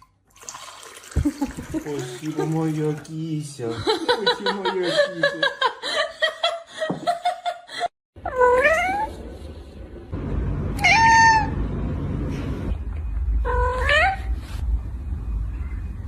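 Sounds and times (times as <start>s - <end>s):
low rumbling noise: 9.1s - 16.0s
cat meowing: 10.8s - 11.6s, 13.4s - 14.3s.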